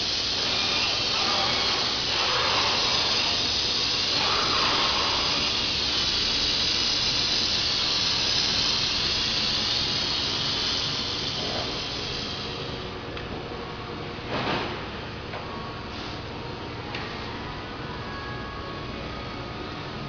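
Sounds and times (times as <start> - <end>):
steady machine hiss: 0.0 - 13.1.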